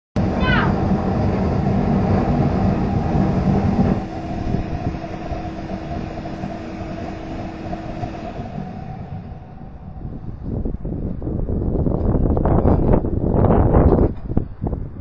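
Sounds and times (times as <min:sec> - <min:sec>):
steady hum: 0:00.2 - 0:11.2
furnace burner roaring: 0:00.2 - 0:11.7
deep rumble: 0:00.2 - 0:15.0.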